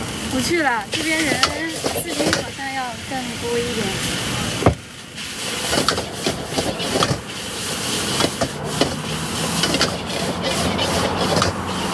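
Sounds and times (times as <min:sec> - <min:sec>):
food sizzling: 0:00.0 - 0:11.9
spatula scraping in a wok: 0:00.9 - 0:02.6, 0:05.2 - 0:11.9.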